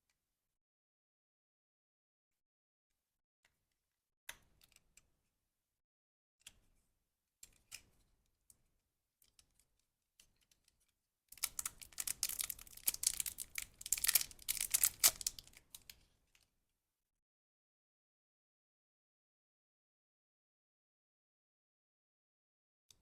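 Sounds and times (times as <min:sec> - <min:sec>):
wrapping crinkling and tearing: 0:11.4 - 0:15.9.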